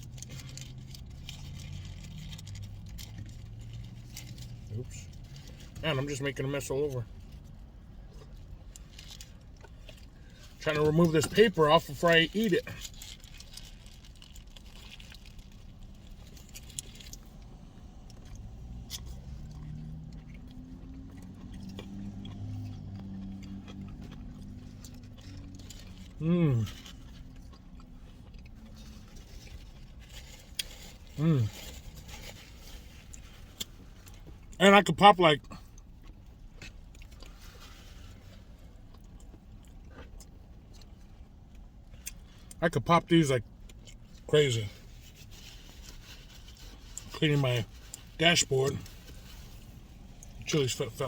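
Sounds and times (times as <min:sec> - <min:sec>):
wrapper paper crinkling and tearing: 0:11.1 - 0:17.2, 0:28.8 - 0:33.4, 0:45.0 - 0:48.1
person chewing: 0:12.6 - 0:34.6, 0:35.4 - 0:42.6
eating sounds: 0:18.1 - 0:29.8.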